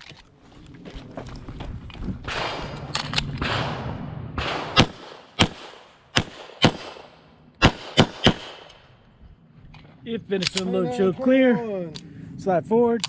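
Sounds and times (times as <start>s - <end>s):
pistol shots: 2.3s - 8.9s.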